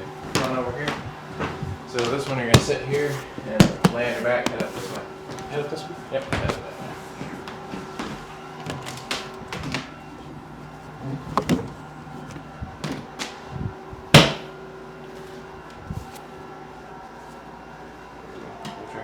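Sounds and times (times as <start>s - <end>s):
knocks and shuffling on table: 0.2s - 5.5s, 6.2s - 14.4s.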